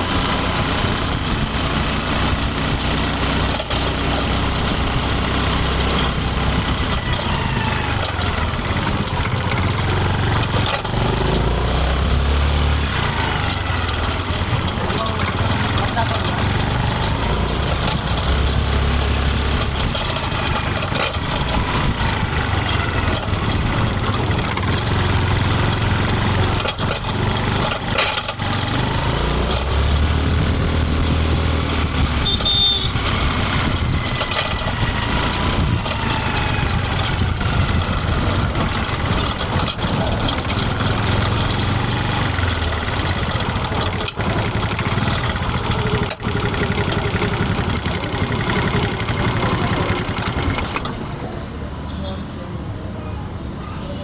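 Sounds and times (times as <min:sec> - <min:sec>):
scooter engine revving: 0:00.0 - 0:51.7
brief high tone: 0:32.2 - 0:33.0.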